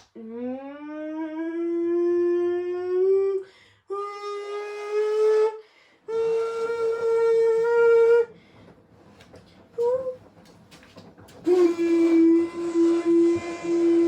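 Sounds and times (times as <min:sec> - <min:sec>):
person humming long notes: 0:00.2 - 0:08.3
person breathing: 0:03.4 - 0:03.9, 0:05.6 - 0:06.1.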